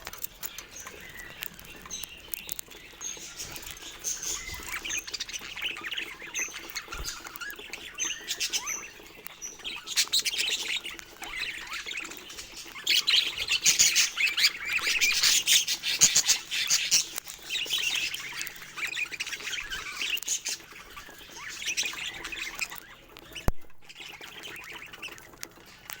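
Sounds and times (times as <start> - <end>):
budgerigars chattering: 0.2 - 26.0.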